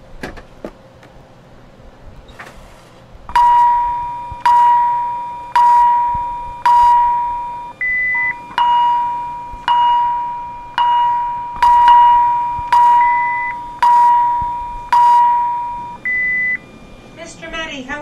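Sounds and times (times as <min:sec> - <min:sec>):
short high beep: 0:03.3 - 0:16.6
electronic alarm chime: 0:03.3 - 0:16.9.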